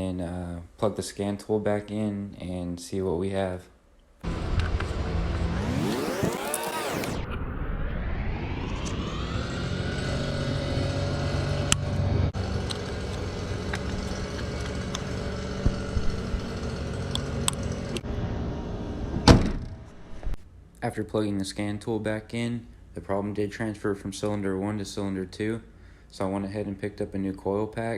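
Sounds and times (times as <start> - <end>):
car engine idling rough: 10.8 - 18.0.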